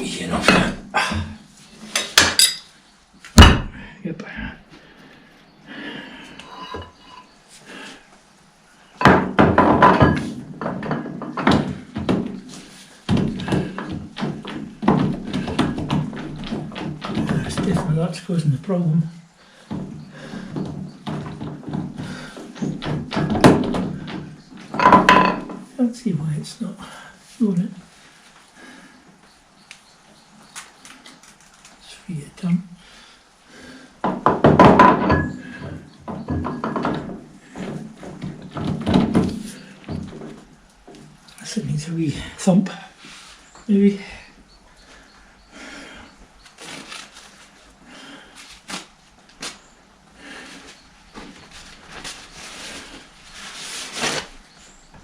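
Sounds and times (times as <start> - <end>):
metal knocks and clunks: 3.3 - 3.9, 9.0 - 18.1, 19.6 - 25.7, 34.0 - 41.2.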